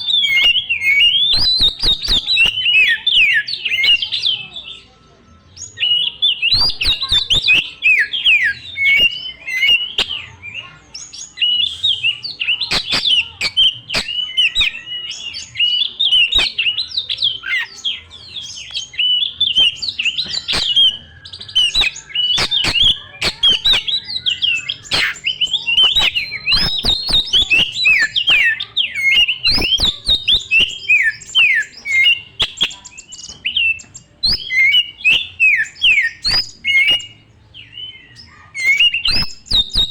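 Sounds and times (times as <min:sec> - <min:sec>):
bird singing whistled notes: 0:00.0 - 0:39.9
bird sharp clicks: 0:00.3 - 0:04.1, 0:06.5 - 0:10.2, 0:12.6 - 0:14.8, 0:19.5 - 0:37.1, 0:38.6 - 0:39.9.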